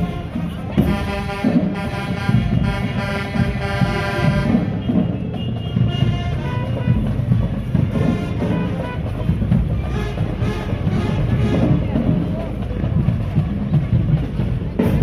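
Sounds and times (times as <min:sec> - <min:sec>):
brass section playing: 0:00.0 - 0:05.0, 0:09.9 - 0:11.8
drumline beats: 0:00.0 - 0:15.0.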